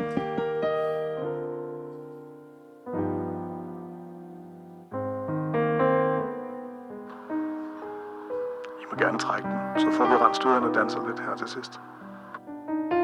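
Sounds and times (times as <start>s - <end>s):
piano playing slow chords: 0.0s - 13.0s.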